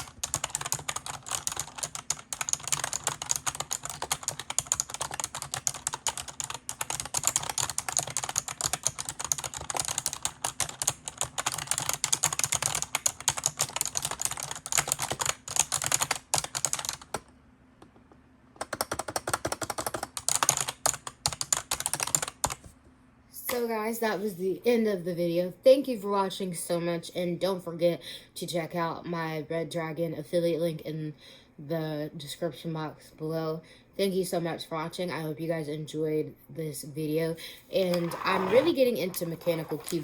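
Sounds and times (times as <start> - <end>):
fast typing on a keyboard: 0.0 - 17.3, 18.6 - 22.7, 37.8 - 40.0.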